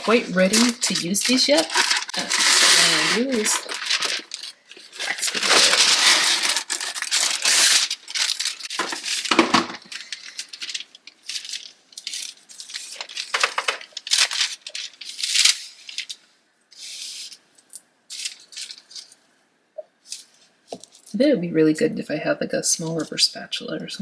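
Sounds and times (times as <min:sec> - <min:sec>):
wax paper crinkling: 0:00.0 - 0:17.4, 0:18.1 - 0:19.2, 0:20.0 - 0:21.2.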